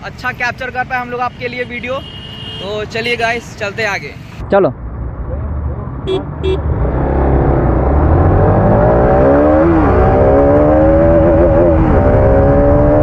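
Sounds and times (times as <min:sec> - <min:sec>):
motorcycle engine accelerating: 0:04.8 - 0:13.0.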